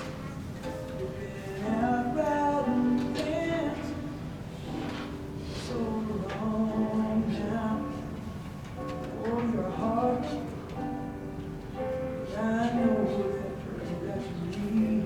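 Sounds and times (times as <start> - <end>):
song with person singing: 1.1 - 4.3, 5.6 - 8.3, 9.0 - 10.9, 12.3 - 15.0.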